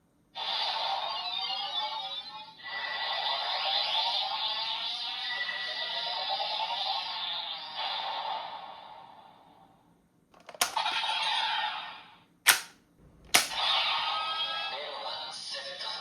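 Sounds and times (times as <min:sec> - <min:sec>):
toy electronic sound effects: 0:00.4 - 0:07.8, 0:10.6 - 0:11.3.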